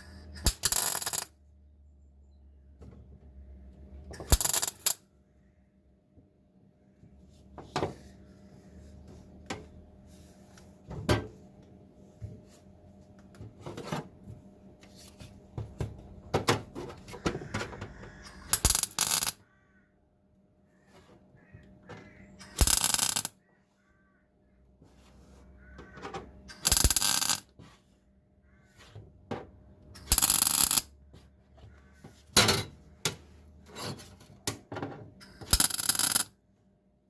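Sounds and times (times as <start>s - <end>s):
small metallic clicks: 0.4s - 1.4s, 4.2s - 5.0s, 17.1s - 19.4s, 26.5s - 27.4s, 29.9s - 30.9s, 35.2s - 36.3s
welder crackling bursts: 26.6s - 27.4s.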